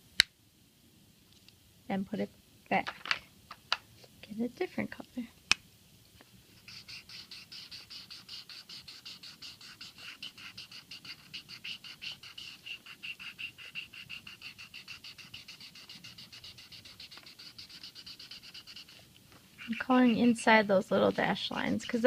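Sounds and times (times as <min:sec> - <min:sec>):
marker scribbling on cardboard: 0:06.5 - 0:22.0.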